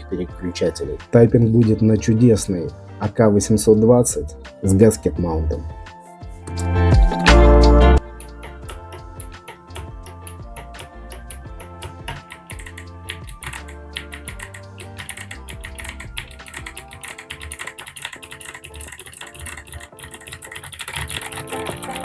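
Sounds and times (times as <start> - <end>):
background music: 0.0 - 22.0
mechanical keyboard typing: 15.0 - 22.0.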